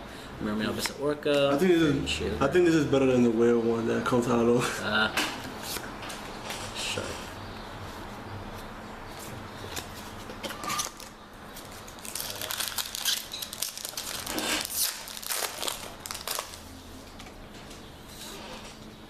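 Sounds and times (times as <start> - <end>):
foil wrapper crinkling and tearing: 10.7 - 16.7.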